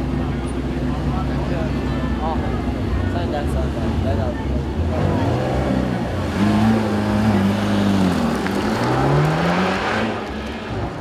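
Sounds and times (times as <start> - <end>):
car engine accelerating hard: 3.5 - 10.8.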